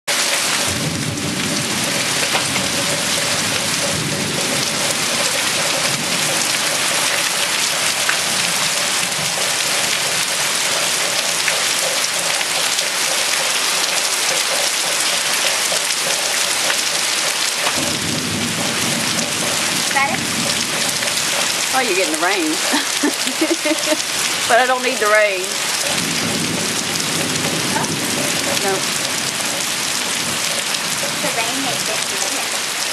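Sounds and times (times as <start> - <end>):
heavy rain pouring: 0.1 - 32.9
low rolling thunder: 0.6 - 11.6, 17.6 - 32.5.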